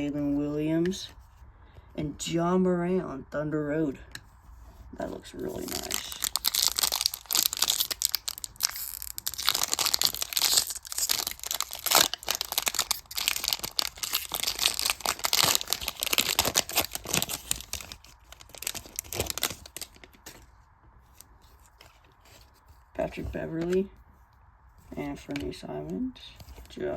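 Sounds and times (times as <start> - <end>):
cards being handled: 5.0 - 20.5
foil wrapper crinkling and tearing: 5.4 - 20.4.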